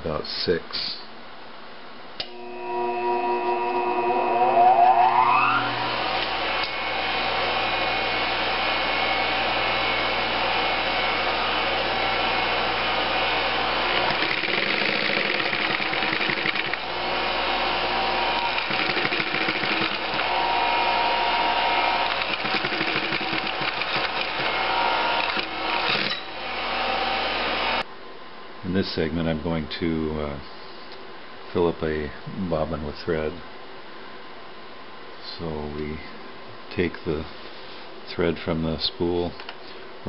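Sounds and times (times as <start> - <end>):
sewing machine whirring: 13.8 - 17.2, 17.9 - 26.4.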